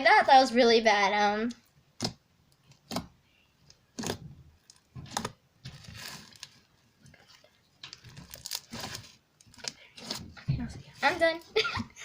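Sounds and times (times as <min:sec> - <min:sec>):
slime crackling: 0:02.0 - 0:10.3
slime popping: 0:03.9 - 0:06.5.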